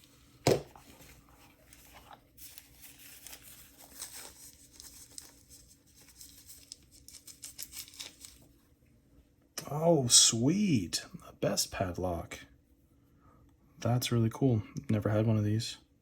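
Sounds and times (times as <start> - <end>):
wrapping crinkling and tearing: 0.8 - 8.6.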